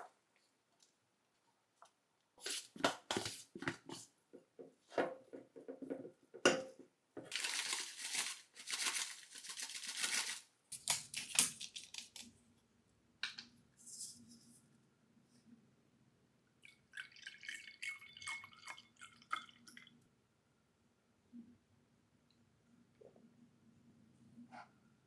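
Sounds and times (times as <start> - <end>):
packaging rustling and tearing: 7.3 - 10.4.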